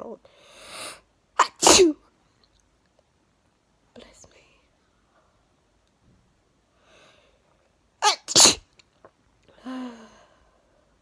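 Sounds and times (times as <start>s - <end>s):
person sneezing: 1.4s - 2.0s, 8.0s - 8.6s.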